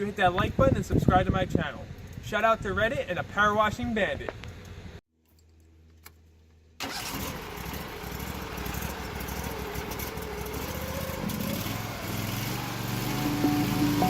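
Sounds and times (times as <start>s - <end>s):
pressure washer engine drone: 6.8s - 14.0s.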